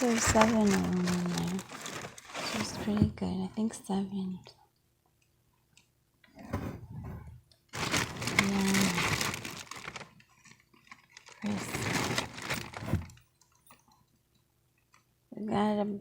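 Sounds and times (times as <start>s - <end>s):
packaging rustling and crinkling: 0.0s - 3.2s, 7.8s - 13.2s.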